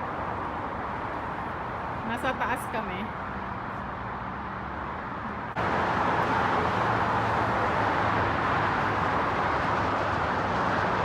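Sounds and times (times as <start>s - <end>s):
road traffic passing cars: 0.0s - 11.0s.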